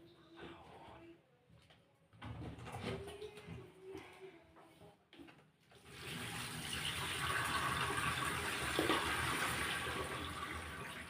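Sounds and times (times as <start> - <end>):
tap water running into sink: 5.8 - 11.0.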